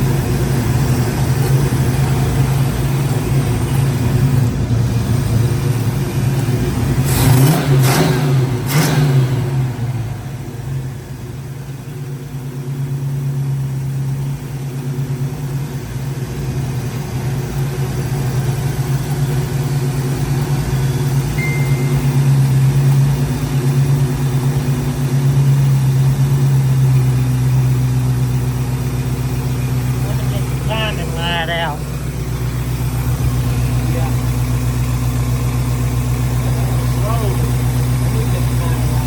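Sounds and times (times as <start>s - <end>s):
car engine idling: 0.0s - 39.0s.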